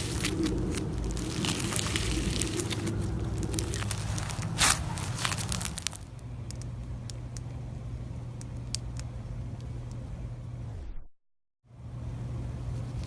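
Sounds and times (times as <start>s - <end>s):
slime foam beads crackling: 0.0s - 6.2s
low hum: 0.0s - 11.1s.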